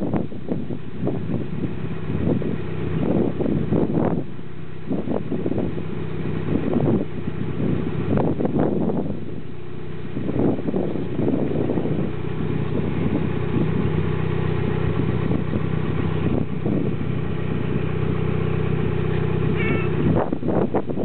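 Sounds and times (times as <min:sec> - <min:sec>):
turbocharged engine running: 0:00.0 - 0:21.0.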